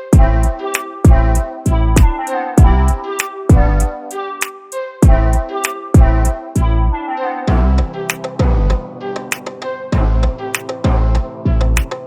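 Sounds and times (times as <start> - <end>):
pitched melody: 0.0 - 12.0
kick drum hits: 0.2 - 0.4, 1.1 - 3.7, 5.0 - 5.3, 6.0 - 6.7.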